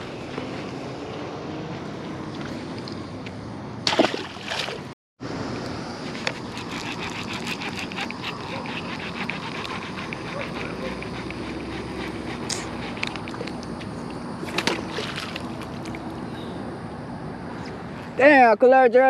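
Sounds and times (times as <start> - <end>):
water splashing and sloshing: 0.0 - 5.0, 14.4 - 16.3.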